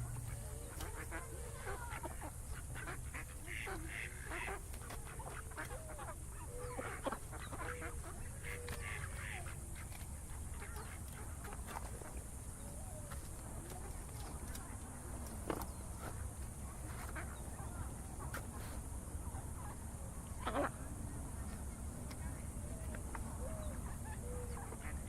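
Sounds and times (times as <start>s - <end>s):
steady low rumble: 0.0s - 4.8s
ducks quacking: 0.0s - 25.0s.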